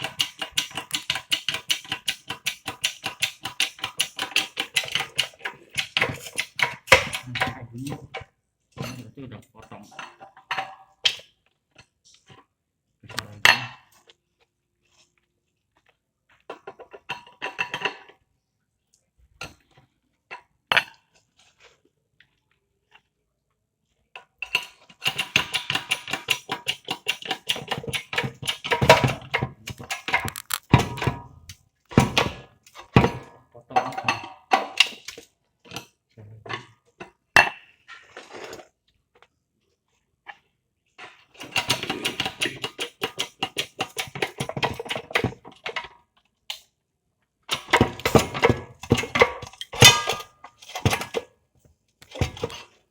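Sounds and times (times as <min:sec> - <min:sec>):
rapid clatter of tools: 0:00.0 - 0:09.1, 0:24.3 - 0:37.2, 0:41.0 - 0:46.6, 0:47.5 - 0:51.3, 0:52.0 - 0:52.9
knocks and clicks: 0:25.2 - 0:31.2.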